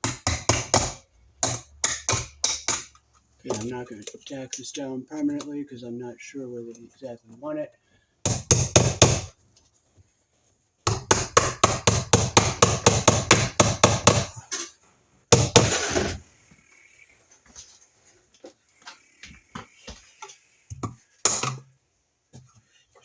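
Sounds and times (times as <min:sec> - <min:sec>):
hammer driving a nail: 0:00.0 - 0:03.0, 0:08.2 - 0:09.3, 0:10.9 - 0:14.4, 0:15.3 - 0:16.2, 0:20.8 - 0:21.6.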